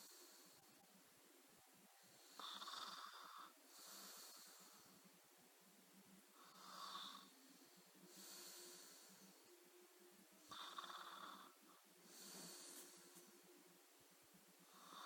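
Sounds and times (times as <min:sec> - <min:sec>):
person snoring: 0:02.3 - 0:04.8, 0:10.5 - 0:13.2.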